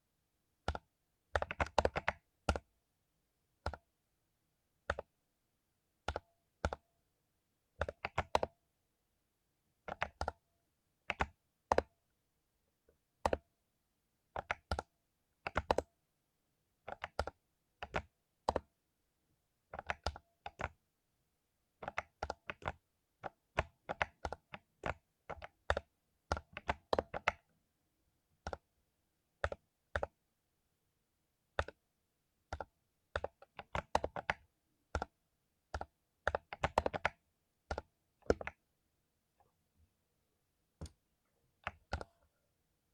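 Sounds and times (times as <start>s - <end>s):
typing on mechanical keyboard: 0.7s - 2.7s, 3.6s - 3.9s, 4.8s - 5.1s, 6.0s - 6.8s, 7.8s - 8.5s, 9.9s - 10.4s, 11.1s - 11.9s, 14.4s - 15.9s, 16.9s - 18.7s, 19.7s - 20.8s, 21.8s - 27.5s, 28.4s - 28.7s, 29.4s - 30.2s, 31.6s - 31.8s, 32.5s - 38.6s, 41.6s - 42.2s.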